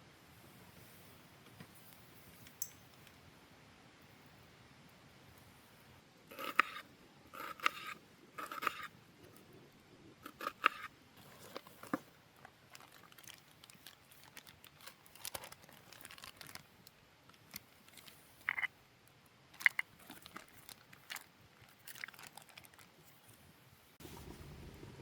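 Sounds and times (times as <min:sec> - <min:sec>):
small objects crinkling and rustling: 0:11.2 - 0:23.7.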